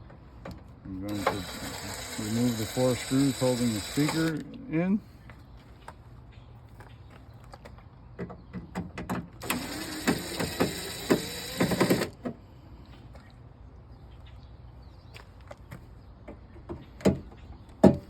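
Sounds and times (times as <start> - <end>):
drill backing out screw: 1.1 - 4.4, 9.4 - 12.2.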